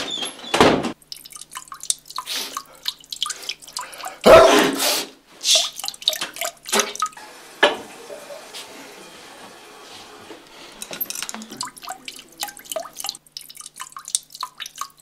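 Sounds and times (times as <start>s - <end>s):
man urinating into toilet: 1.0s - 4.3s, 5.4s - 7.2s, 10.5s - 15.0s
loud sneeze: 4.2s - 5.7s.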